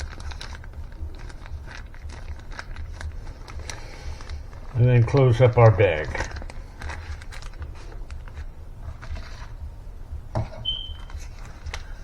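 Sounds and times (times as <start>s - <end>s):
plastic bag clicks and rustles: 0.0s - 9.6s, 10.8s - 12.0s
brief high tone: 10.6s - 11.0s.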